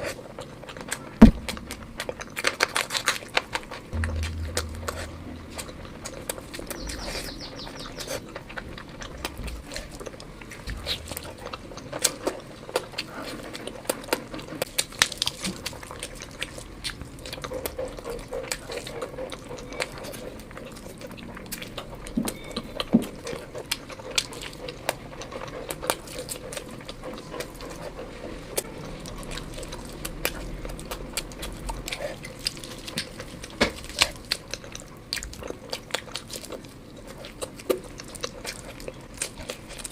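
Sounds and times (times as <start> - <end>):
person chewing and smacking food: 8.0 - 28.2, 28.8 - 39.9.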